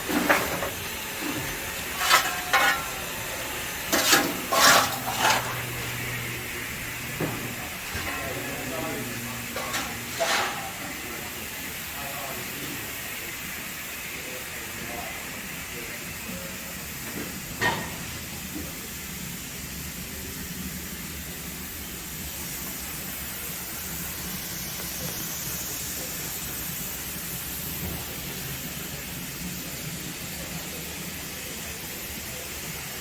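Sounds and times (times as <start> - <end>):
hiss of escaping steam: 0.0 - 6.0, 9.6 - 33.0
sharp metal clank: 2.0 - 3.0, 3.9 - 5.6, 9.5 - 10.9.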